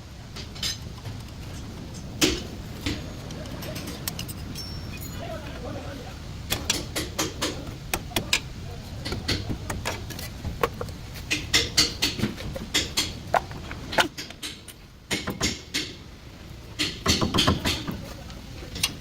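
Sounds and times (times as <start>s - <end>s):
steady low rumble: 0.0s - 17.2s
sharp clicks and knocks: 0.3s - 4.8s, 6.5s - 19.0s.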